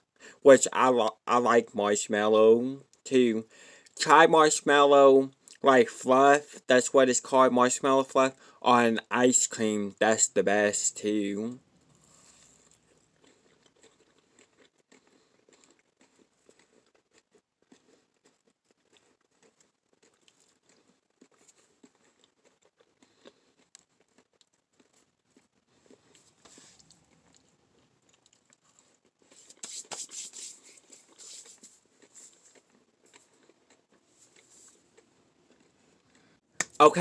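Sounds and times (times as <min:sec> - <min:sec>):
chewing marshmallow: 0:11.8 - 0:29.7, 0:30.8 - 0:36.4.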